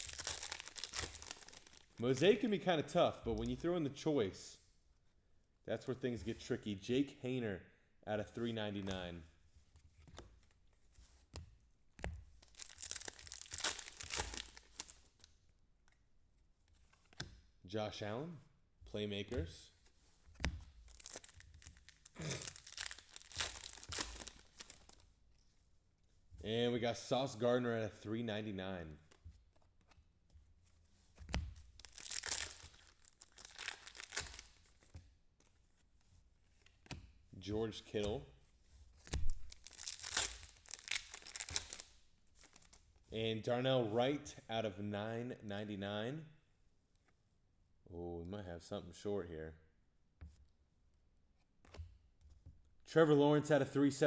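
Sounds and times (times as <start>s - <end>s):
wrapper tearing and crinkling: 0.0s - 2.4s, 12.4s - 15.3s, 20.8s - 25.1s, 31.6s - 34.7s, 39.1s - 42.8s.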